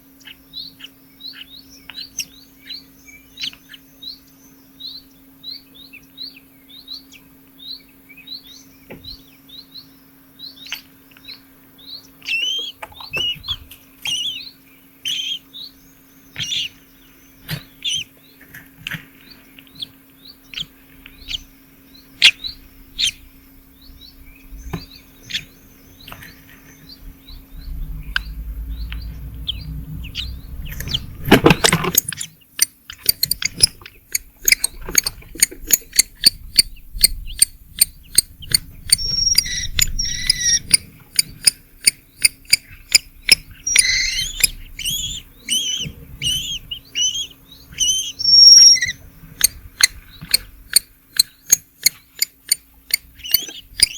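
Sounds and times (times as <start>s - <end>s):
nestlings cheeping: 10.6s - 18.2s, 19.3s - 53.9s.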